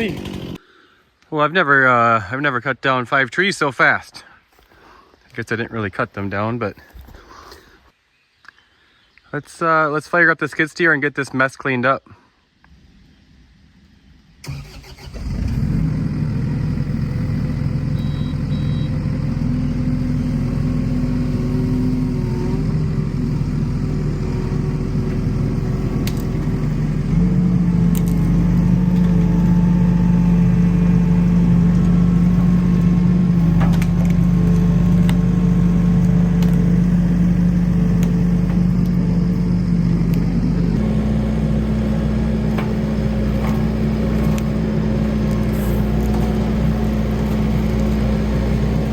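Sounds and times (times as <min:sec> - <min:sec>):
diesel engine running: 0:00.0 - 0:00.6, 0:14.4 - 0:48.9.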